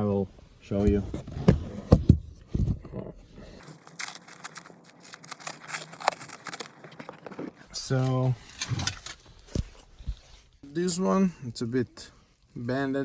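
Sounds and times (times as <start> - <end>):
rustling and crinkling: 0.6 - 10.9.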